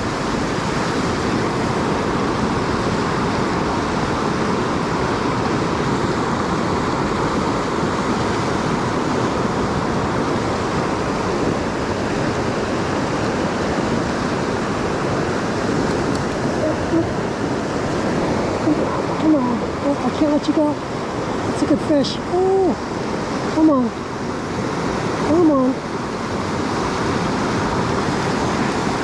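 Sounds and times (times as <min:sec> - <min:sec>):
creek water rushing: 0:00.0 - 0:29.0.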